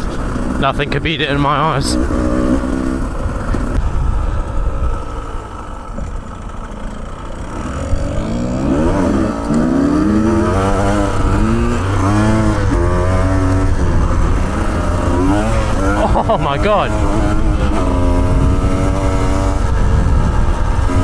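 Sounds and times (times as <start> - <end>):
dirt bike engine revving: 0.0 - 21.0.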